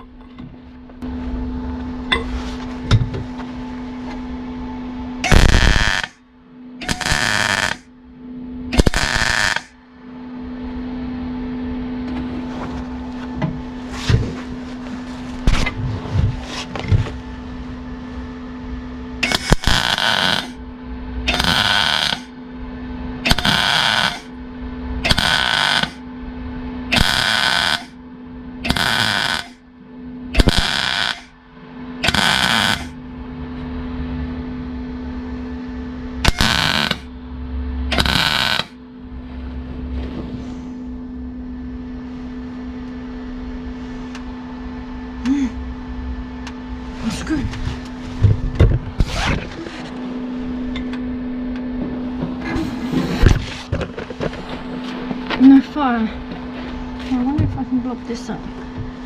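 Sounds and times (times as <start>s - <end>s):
steady hum: 0.0s - 59.0s
crackling welding bursts: 5.2s - 6.2s, 6.8s - 7.9s, 8.7s - 9.8s, 19.2s - 20.6s, 21.3s - 22.3s, 23.3s - 24.3s, 25.0s - 26.0s, 26.9s - 28.0s, 28.6s - 29.6s, 30.4s - 31.3s, 32.0s - 33.0s, 36.2s - 37.1s, 37.9s - 38.8s.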